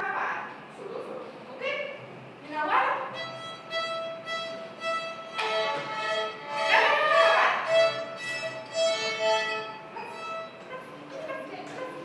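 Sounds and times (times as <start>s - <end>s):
violin bowed notes: 3.1s - 10.8s.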